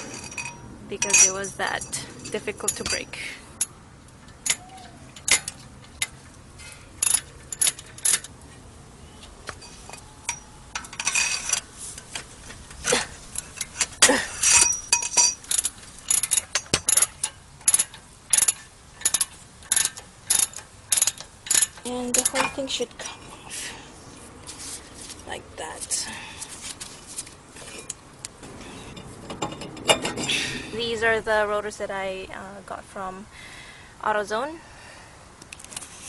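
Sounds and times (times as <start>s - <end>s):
metal tools clinking: 0.0s - 8.4s, 9.5s - 23.2s, 27.6s - 30.5s.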